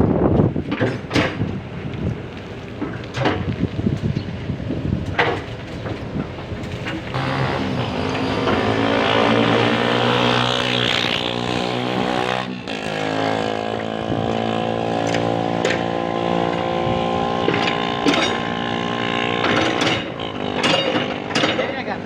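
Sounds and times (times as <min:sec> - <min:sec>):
diesel engine running: 0:04.5 - 0:21.4.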